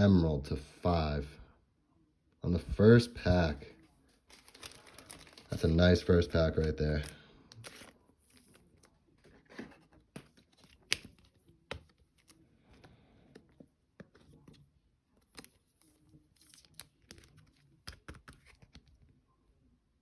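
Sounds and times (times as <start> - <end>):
cards and packaging rustling: 3.2 - 19.2.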